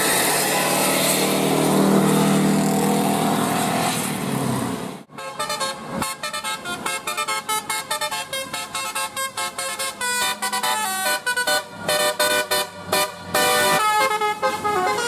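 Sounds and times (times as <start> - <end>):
vehicle noise: 0.0 - 15.0
bus horn sounding: 5.1 - 15.0
short multi-tone horn notes: 5.1 - 15.0.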